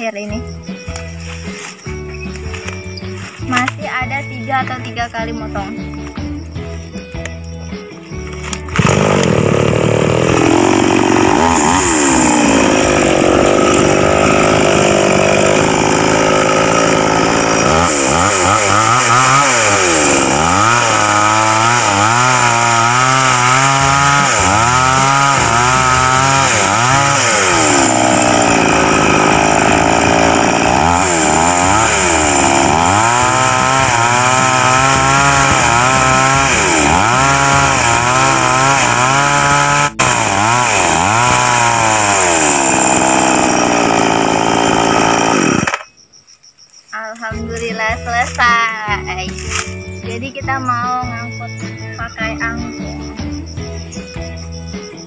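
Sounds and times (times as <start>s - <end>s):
chainsaw cutting log: 8.4s - 45.9s.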